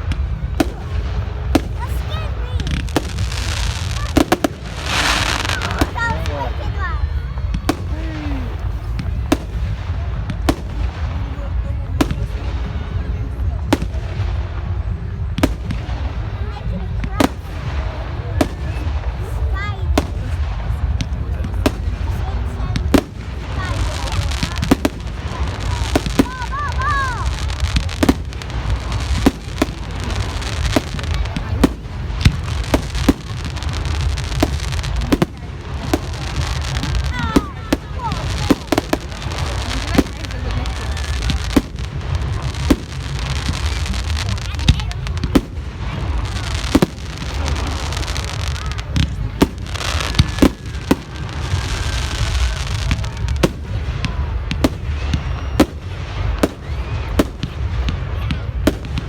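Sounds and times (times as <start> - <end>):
fireworks bangs: 0.0 - 59.0
firework whistles: 54.5 - 58.0.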